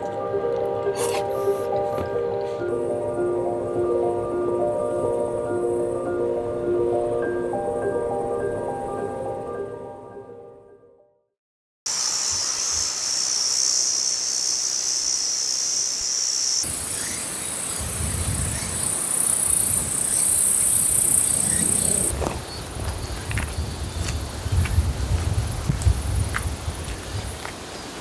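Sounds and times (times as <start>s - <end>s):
insects chirring: 2.7s - 8.8s, 11.9s - 28.0s.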